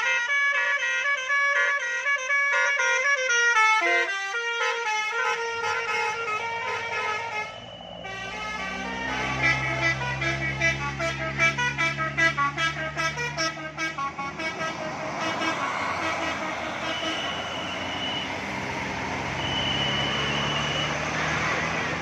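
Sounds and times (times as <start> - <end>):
bus engine and road noise: 0.0 - 22.0
bus horn playing melody: 0.0 - 22.0
high steady whine: 6.2 - 9.2.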